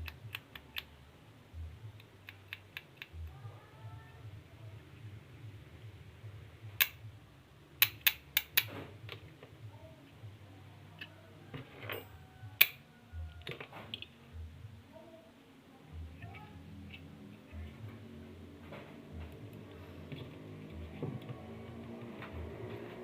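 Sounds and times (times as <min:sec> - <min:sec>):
sharp clicks and taps: 0:00.0 - 0:01.0, 0:01.9 - 0:03.3, 0:07.8 - 0:09.2
faint low hum: 0:00.0 - 0:23.0.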